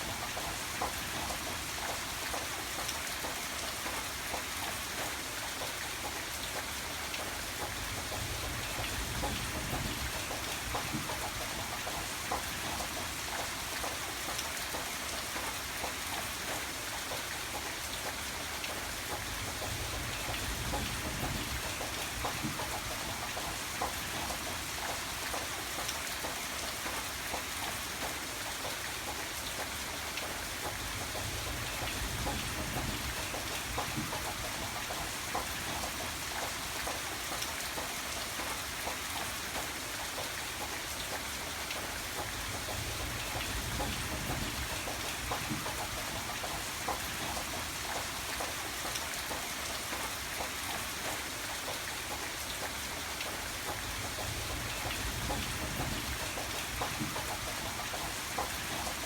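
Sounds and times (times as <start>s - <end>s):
heavy rain: 0.0s - 59.0s.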